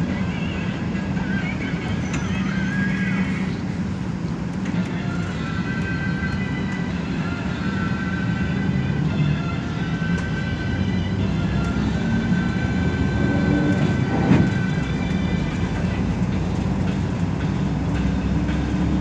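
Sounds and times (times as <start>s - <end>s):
bus engine and road noise: 0.0s - 19.0s.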